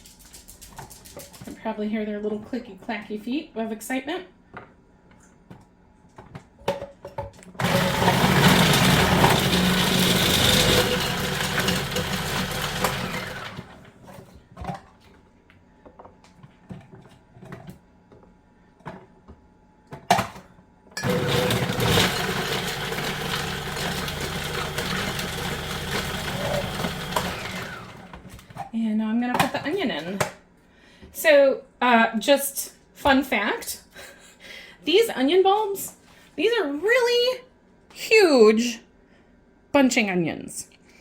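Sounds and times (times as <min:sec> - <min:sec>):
food processor shredding carrots: 0:07.5 - 0:14.2, 0:21.0 - 0:28.5.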